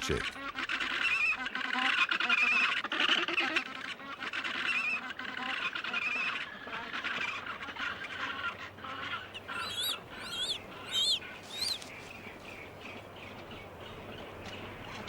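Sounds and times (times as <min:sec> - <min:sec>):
high wavering penguin calls: 0:09.0 - 0:12.8
penguin colony calling: 0:09.0 - 0:13.0.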